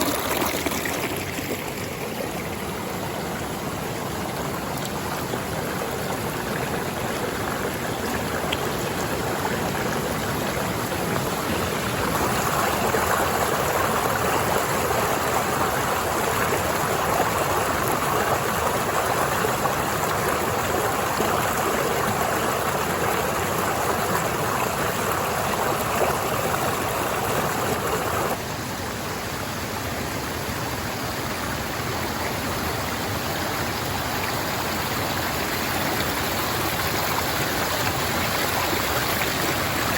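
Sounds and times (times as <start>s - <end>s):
louder rushing water: 0.0s - 28.9s, 32.7s - 39.9s
stream rushing: 0.0s - 39.9s.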